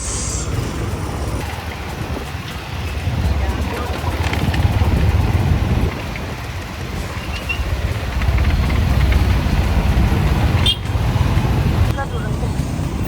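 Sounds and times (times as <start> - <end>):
motorcycle engine rumble: 0.0 - 13.0
wind on microphone: 0.0 - 13.0.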